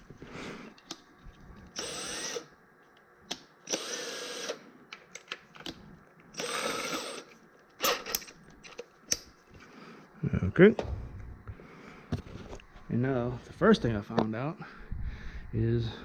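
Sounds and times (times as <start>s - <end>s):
electric drill whining: 1.7s - 2.5s, 3.6s - 4.6s, 6.3s - 8.2s.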